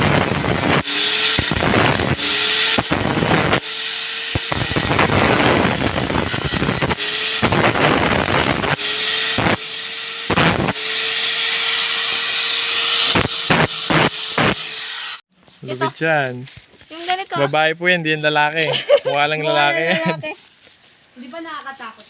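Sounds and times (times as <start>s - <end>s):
arc welding crackling: 0.0s - 15.8s.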